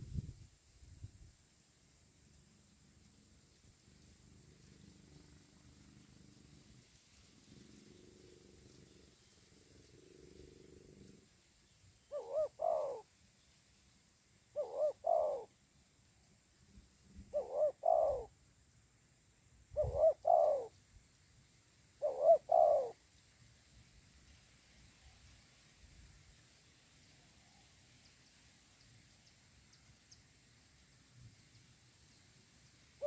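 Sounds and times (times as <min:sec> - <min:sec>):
dove cooing: 0:12.1 - 0:13.1, 0:14.5 - 0:15.5, 0:17.2 - 0:18.3, 0:19.7 - 0:20.8, 0:22.0 - 0:23.0.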